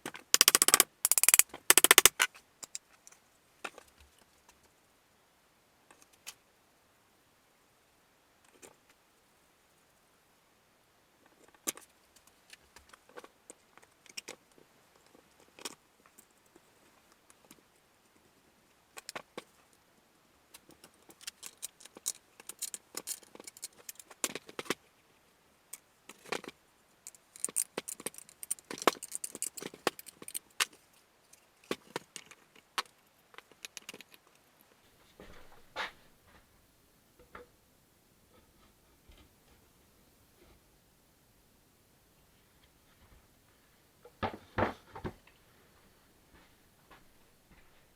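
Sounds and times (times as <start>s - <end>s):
small hard parts clattering: 0.0s - 4.0s, 20.6s - 24.8s, 26.1s - 34.4s.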